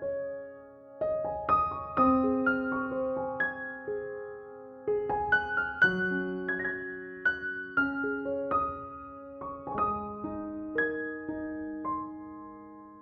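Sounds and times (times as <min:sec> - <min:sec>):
soft solo piano: 0:00.0 - 0:13.0.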